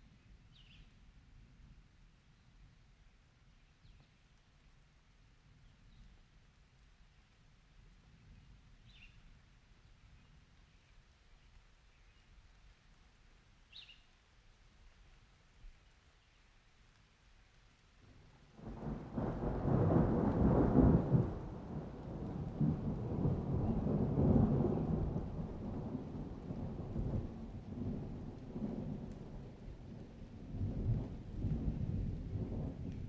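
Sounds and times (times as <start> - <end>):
heavy rain: 18.2 - 33.0
rolling thunder: 18.6 - 33.0.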